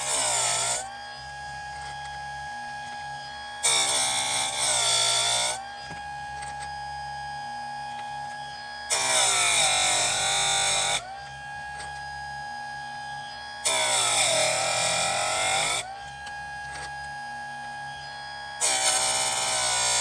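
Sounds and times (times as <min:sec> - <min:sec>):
grinding wheel on chain: 0:00.0 - 0:06.7, 0:08.9 - 0:12.0, 0:13.6 - 0:17.0, 0:18.6 - 0:20.0
chainsaw sharpener motor whine: 0:00.0 - 0:20.0.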